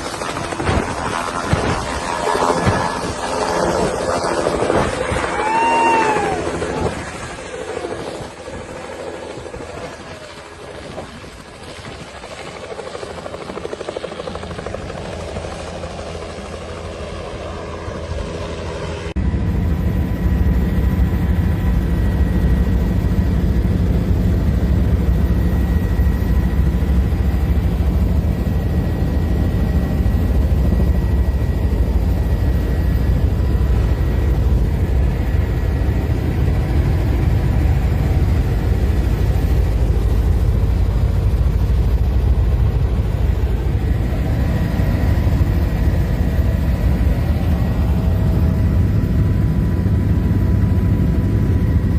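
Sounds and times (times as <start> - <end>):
helicopter rumble: 0.0 - 51.9.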